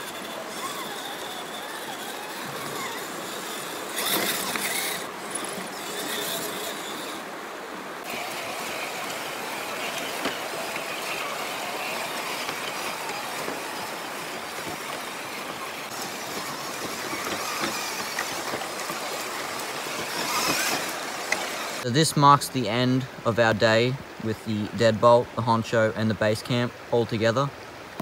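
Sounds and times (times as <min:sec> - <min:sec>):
electric motor whine: 0:00.0 - 0:21.8
water splashing: 0:08.0 - 0:21.9.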